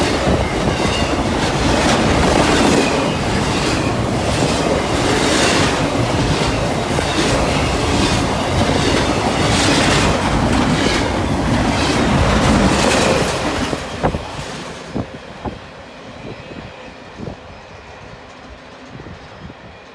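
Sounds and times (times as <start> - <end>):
train wheels clacking over rail joints: 0.0 - 15.1.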